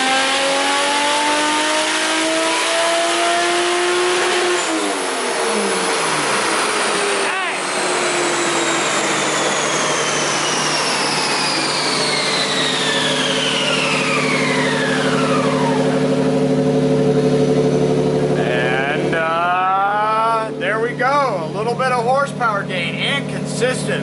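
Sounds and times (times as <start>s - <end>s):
car engine running low: 0.0s - 24.0s
dyno rollers whining: 0.0s - 24.0s.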